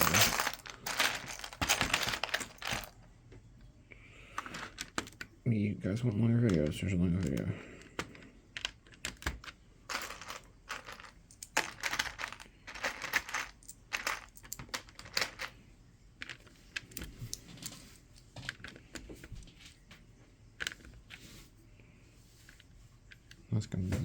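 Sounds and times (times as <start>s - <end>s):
plastic bricks rattling: 0.0s - 3.0s, 4.3s - 5.4s, 6.0s - 15.6s.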